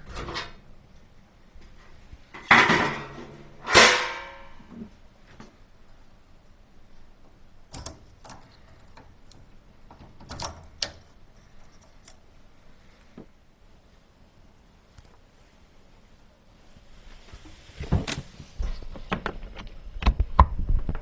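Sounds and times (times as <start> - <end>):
clicks and knocks of hard parts: 2.4 - 4.7, 7.7 - 12.2.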